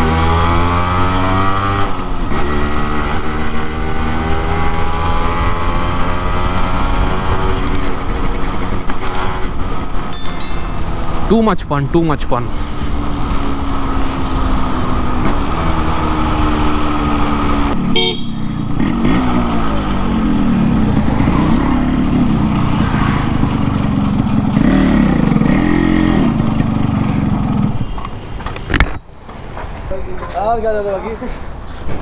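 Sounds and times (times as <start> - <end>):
wind and road noise: 0.0 - 32.0
motorcycle engine revving: 12.7 - 27.7.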